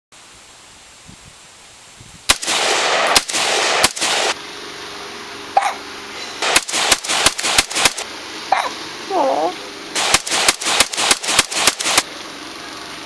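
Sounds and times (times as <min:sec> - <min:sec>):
rifle shots: 0:02.3 - 0:04.4, 0:06.4 - 0:08.1, 0:10.0 - 0:12.1
loud rushing noise: 0:02.3 - 0:12.1.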